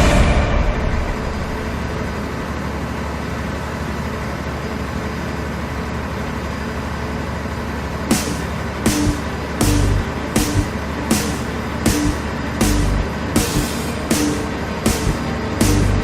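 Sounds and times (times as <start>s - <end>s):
machine hum: 8.1s - 16.0s
sharp knock: 8.1s - 16.0s.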